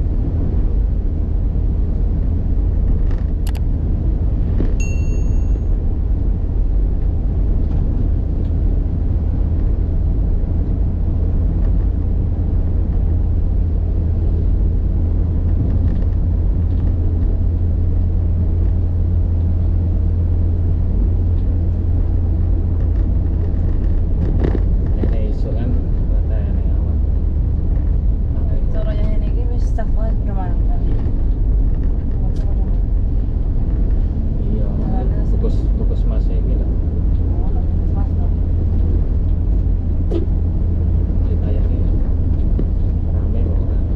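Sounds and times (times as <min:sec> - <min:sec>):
vehicle rumble: 0:00.0 - 0:43.9
short high beep: 0:04.8 - 0:05.8.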